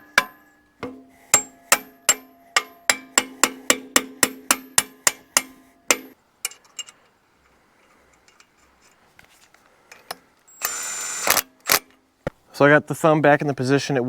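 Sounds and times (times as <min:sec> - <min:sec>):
hammer ringing on steel: 0:00.0 - 0:06.2.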